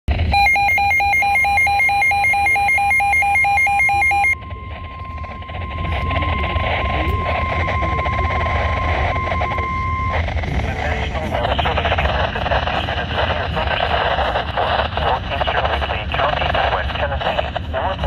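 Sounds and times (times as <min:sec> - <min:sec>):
noisy background: 0:00.1 - 0:18.0
fast two-pitch electronic beeping: 0:00.2 - 0:13.6
steady alert tone: 0:00.3 - 0:11.9.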